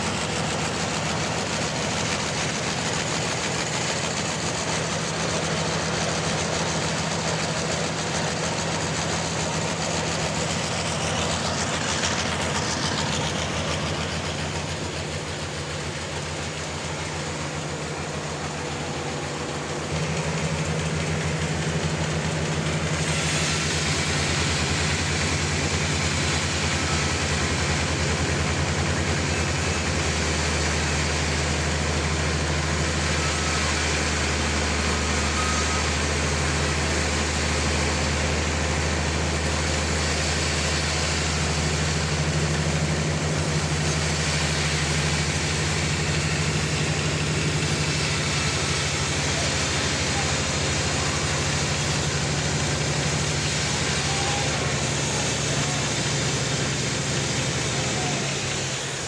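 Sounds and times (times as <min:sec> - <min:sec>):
large engine running: 0:00.0 - 0:59.0.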